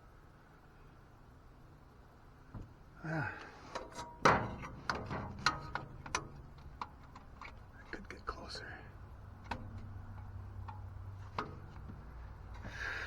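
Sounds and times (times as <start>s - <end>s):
light metal clicks and clinks: 9.4s - 11.9s.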